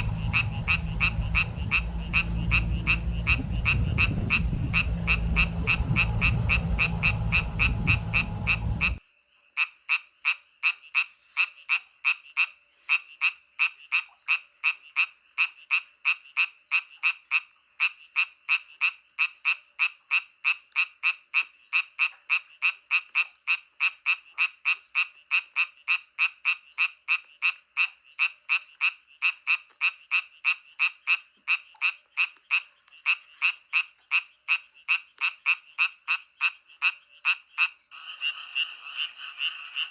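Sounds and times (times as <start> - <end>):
frog croaking: 0.0 - 9.0, 9.6 - 39.9
loud rushing noise: 0.0 - 9.0.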